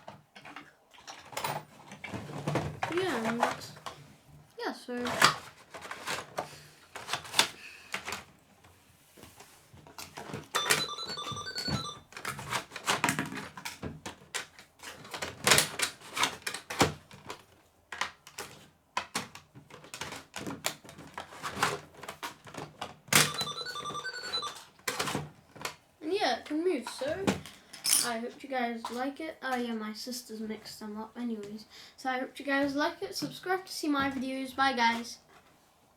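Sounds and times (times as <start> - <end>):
toy cash register keys clicking: 10.5 - 13.0, 23.2 - 25.2
electronic beeping tune: 10.6 - 12.0, 23.3 - 24.6.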